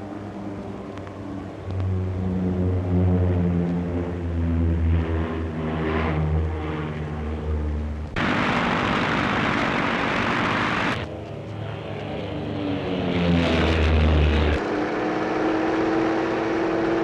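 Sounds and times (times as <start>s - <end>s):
propeller aircraft engines droning: 0.0s - 17.0s
loud rushing noise: 8.1s - 11.1s.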